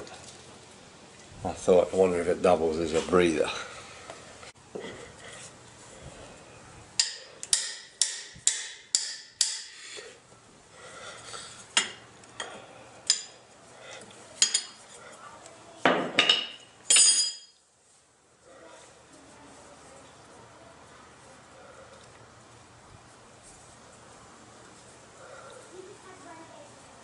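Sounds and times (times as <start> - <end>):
metal tools clinking: 16.2 - 17.6.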